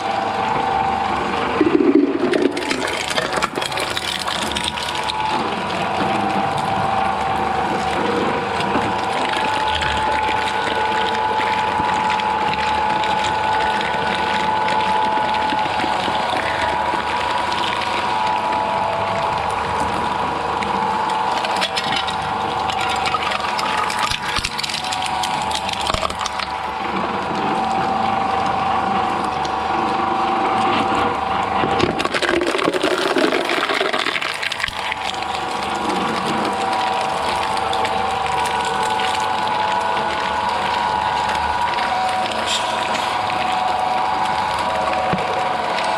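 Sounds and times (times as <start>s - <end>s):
material crunching in shredder: 0.0s - 45.9s
shredder machine whining: 0.0s - 45.9s.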